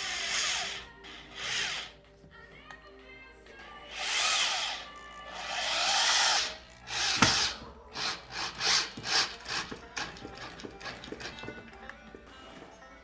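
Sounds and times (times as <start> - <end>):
power drill driving a screw: 0.0 - 1.9, 3.9 - 11.4.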